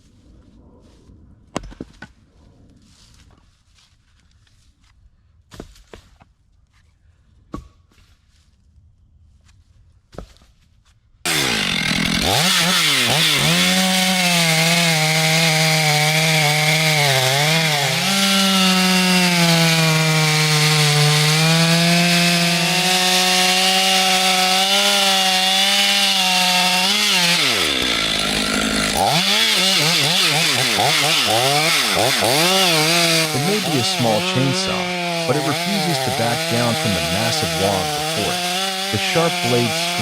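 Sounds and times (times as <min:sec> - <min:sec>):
chainsaw cutting into log: 0:11.3 - 0:40.0.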